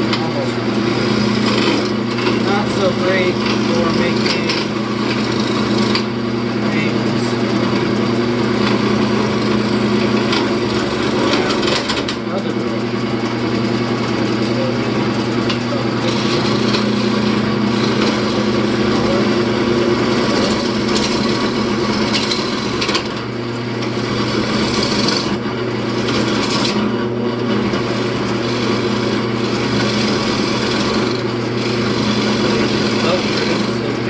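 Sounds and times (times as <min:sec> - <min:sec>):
lathe motor hum: 0:00.0 - 0:34.0
gouge scraping wood: 0:00.7 - 0:06.1, 0:07.5 - 0:12.2, 0:16.0 - 0:34.0.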